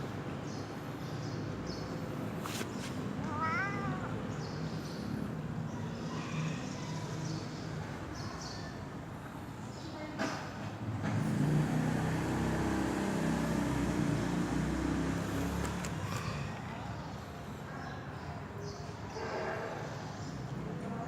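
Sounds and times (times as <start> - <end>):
cat meowing: 3.2 - 4.3.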